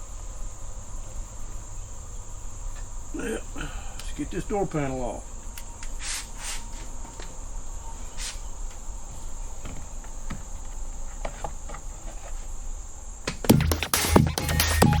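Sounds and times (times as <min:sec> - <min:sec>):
high-pitched insect trill: 0:00.0 - 0:10.7
electronic music: 0:13.5 - 0:15.0.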